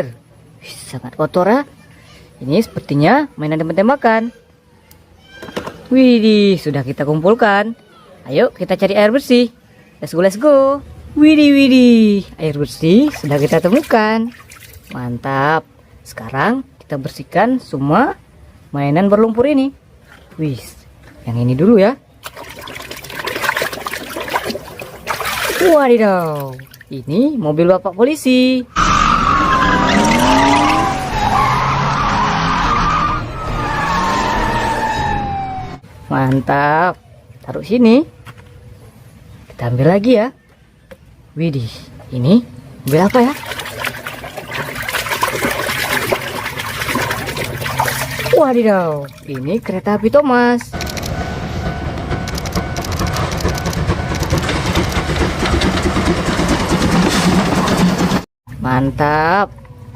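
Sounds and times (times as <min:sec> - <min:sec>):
car engine: 0:28.7 - 0:35.8, 0:50.7 - 0:58.3
falling siren tone: 0:28.7 - 0:37.2, 0:50.8 - 0:55.7.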